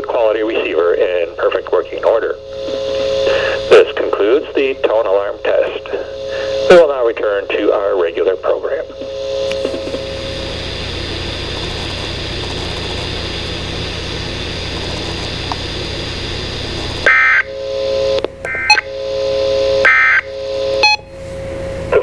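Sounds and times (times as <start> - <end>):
radio static hiss: 0.0 - 18.9
short electronic beeps: 18.5 - 18.9, 20.8 - 21.1.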